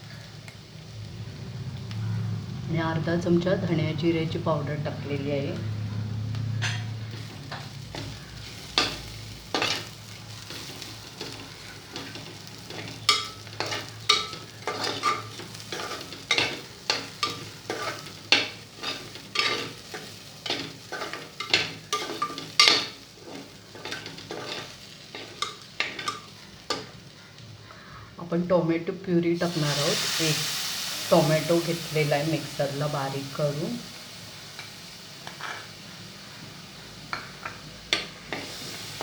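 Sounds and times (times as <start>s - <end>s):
food sizzling in oil: 6.3s - 27.5s, 28.7s - 39.0s
spoon scraping a pan: 6.6s - 27.0s, 34.6s - 35.7s.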